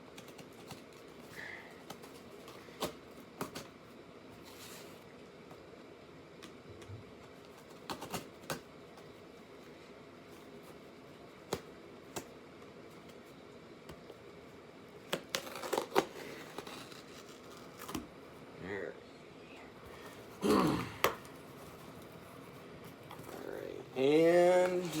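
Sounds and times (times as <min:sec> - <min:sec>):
packaging rustling and crinkling: 0:00.0 - 0:03.7, 0:15.0 - 0:18.3, 0:21.1 - 0:25.0.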